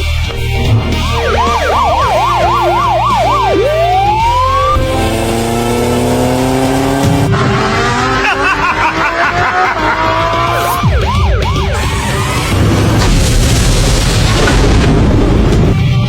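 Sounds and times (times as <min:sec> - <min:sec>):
steady low rumble: 0:00.0 - 0:04.7
held steady tones: 0:00.1 - 0:12.0
police siren yelping and wailing: 0:00.6 - 0:13.0.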